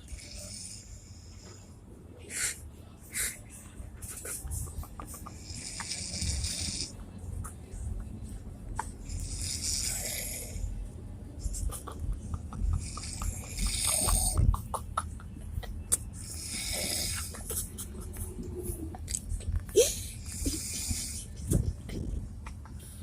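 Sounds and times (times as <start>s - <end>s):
loud snoring: 5.3s - 6.9s, 9.1s - 10.7s, 12.8s - 14.4s, 16.2s - 17.3s.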